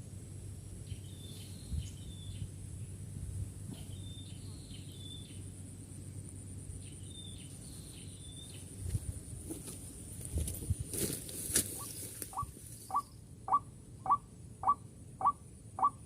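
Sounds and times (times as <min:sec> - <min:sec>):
bird chirping: 0:00.8 - 0:03.0, 0:03.7 - 0:08.8, 0:11.8 - 0:16.0.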